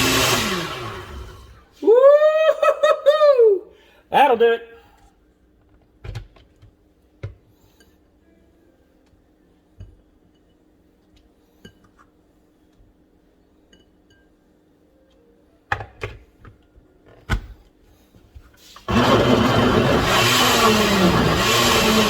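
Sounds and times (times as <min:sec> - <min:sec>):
electric blender running: 0:00.0 - 0:01.6, 0:18.8 - 0:22.0.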